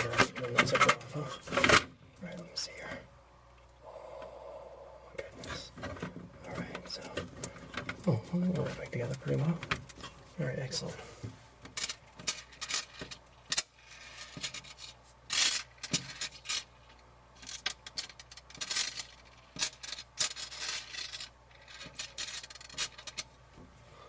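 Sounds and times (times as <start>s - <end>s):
parts scraping and rubbing: 10.8s - 23.4s.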